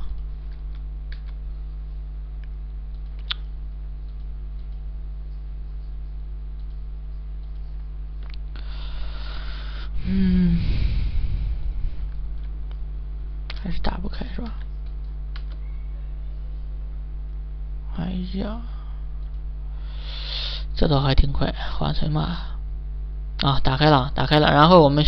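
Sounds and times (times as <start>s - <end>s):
electrical mains hum: 0.0s - 25.0s
faint clicks: 0.1s - 8.5s, 14.5s - 15.7s, 19.2s - 19.4s
breathy rush of noise: 8.6s - 13.1s.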